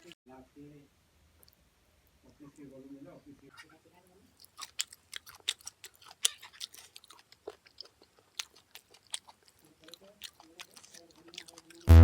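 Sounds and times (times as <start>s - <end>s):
chewing and mouth smacking: 4.4s - 11.9s.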